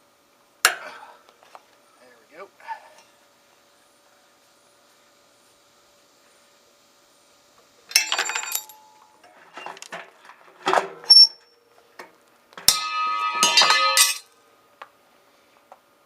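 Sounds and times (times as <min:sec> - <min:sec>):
washing machine parts clattering: 0:12.6 - 0:14.3.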